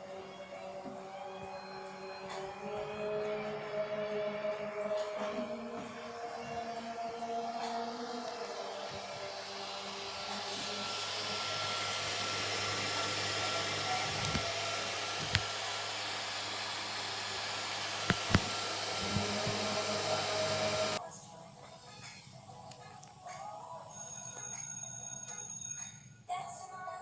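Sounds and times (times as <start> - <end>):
printer fans whirring: 1.8 - 21.0.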